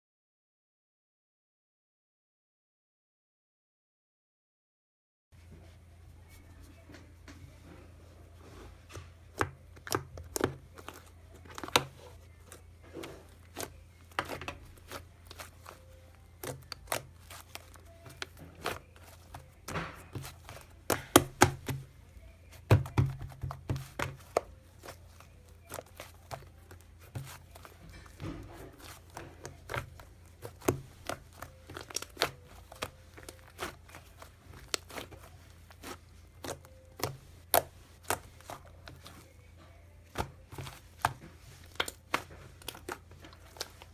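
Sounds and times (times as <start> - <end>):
low steady hum: 5.4 - 43.9
sticky material clicking and crackling: 9.3 - 43.9.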